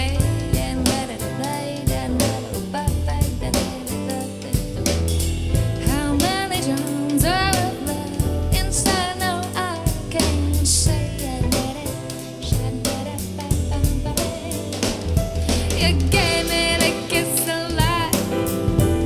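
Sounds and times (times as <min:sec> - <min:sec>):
bass and drum kit: 0:00.0 - 0:19.0
person singing: 0:05.8 - 0:14.8, 0:15.6 - 0:19.0.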